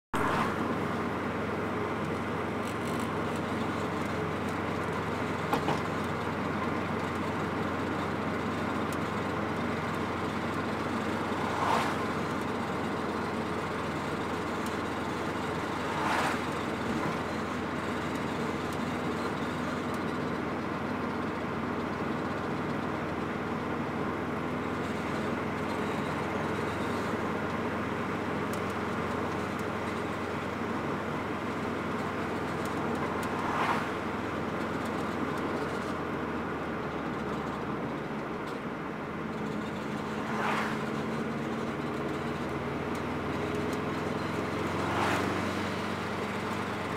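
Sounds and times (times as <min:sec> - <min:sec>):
loud wheel noise: 0:00.0 - 0:46.9
car driving: 0:00.1 - 0:46.9.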